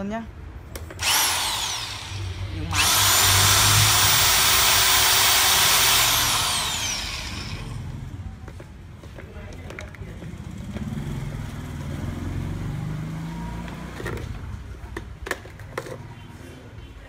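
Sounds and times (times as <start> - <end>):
hammer drill motor running: 1.0 - 8.1.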